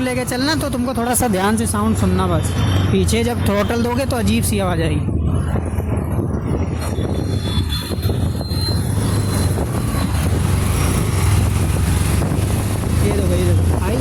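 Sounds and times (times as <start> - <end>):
road and wind noise: 0.0 - 14.0
motorcycle engine running: 8.9 - 14.0.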